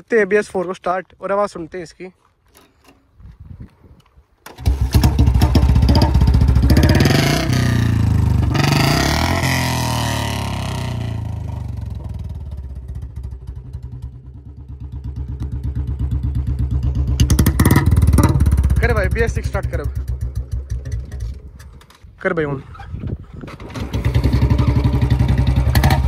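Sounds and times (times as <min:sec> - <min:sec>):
motorcycle engine revving and idling: 0:04.6 - 0:21.8, 0:23.4 - 0:26.0.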